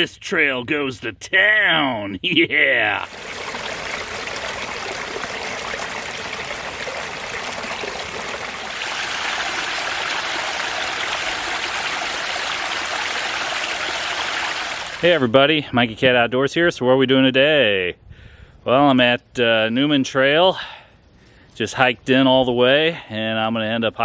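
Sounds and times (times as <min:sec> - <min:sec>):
creek water flowing: 0:02.5 - 0:15.2.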